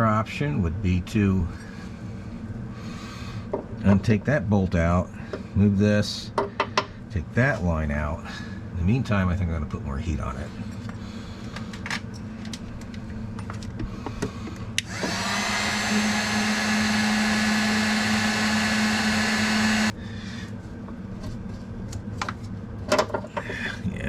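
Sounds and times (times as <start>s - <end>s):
heat gun blowing: 14.8s - 20.0s.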